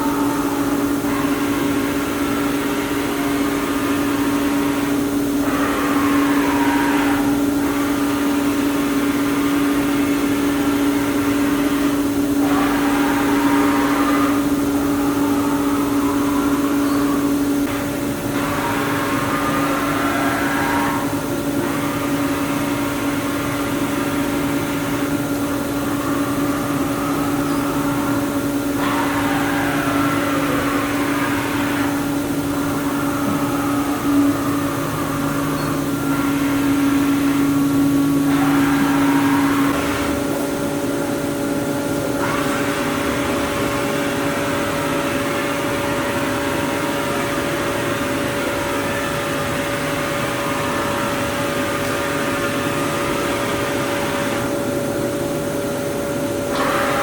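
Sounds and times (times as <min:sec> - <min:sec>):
falling whine: 0:00.0 - 0:57.0
machining center motor whine: 0:00.0 - 0:57.0.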